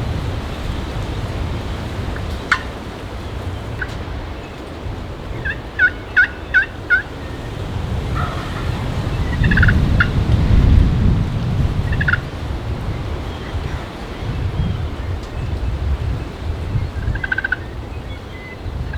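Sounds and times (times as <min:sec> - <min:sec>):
wind rumbling on microphone: 0:00.0 - 0:18.9
turkey call yelps: 0:05.4 - 0:07.4, 0:08.0 - 0:10.2
gobble-like rattle: 0:08.1 - 0:10.1.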